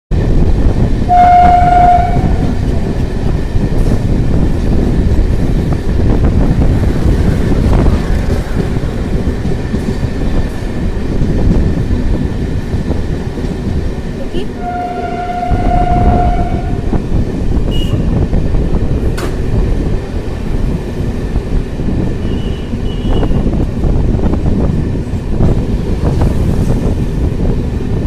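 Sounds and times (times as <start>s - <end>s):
train rumbling: 0.1s - 28.0s
train horn: 1.1s - 2.6s, 14.4s - 17.0s.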